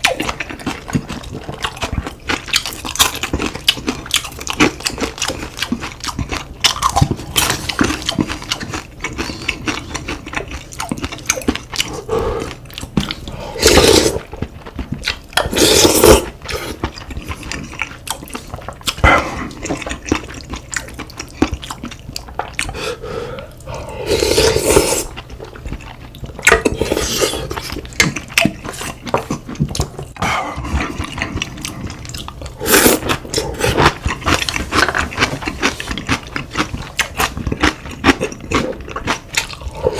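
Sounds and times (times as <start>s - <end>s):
chewing: 0.0s - 39.9s
loud slurps: 13.5s - 14.3s, 23.8s - 25.2s, 32.6s - 34.0s.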